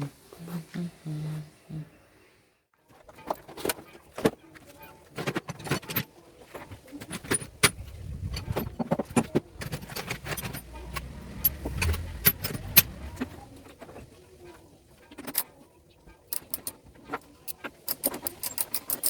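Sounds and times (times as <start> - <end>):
metal tools clinking: 4.8 - 13.9, 16.2 - 19.0
low rumble of handling: 7.0 - 14.8.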